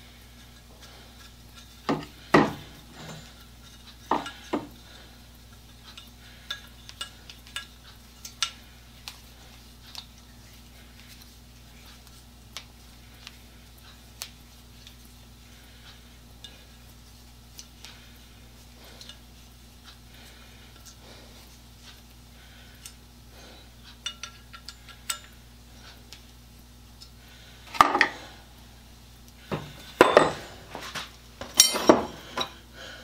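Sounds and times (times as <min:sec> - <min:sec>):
faint steady hum: 0:00.0 - 0:33.0
metal tools clinking: 0:01.2 - 0:04.6, 0:29.5 - 0:32.6.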